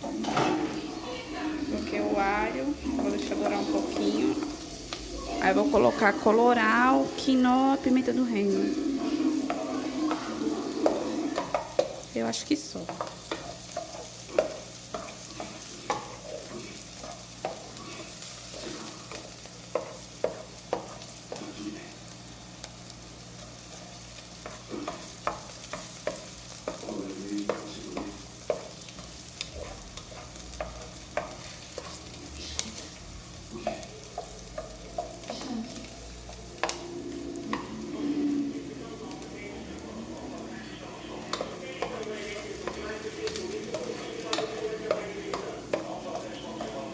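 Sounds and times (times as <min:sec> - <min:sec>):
meat and onion sizzling: 0:00.0 - 0:46.9
spoon scraping and knocking pot: 0:09.1 - 0:12.1, 0:12.9 - 0:21.4, 0:41.3 - 0:46.0.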